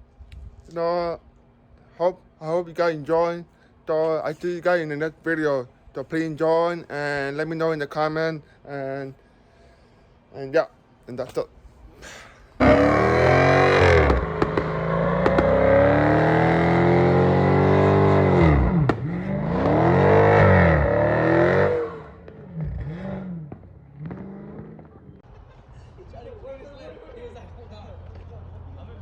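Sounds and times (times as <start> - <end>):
car engine revving hard: 12.6 - 25.0.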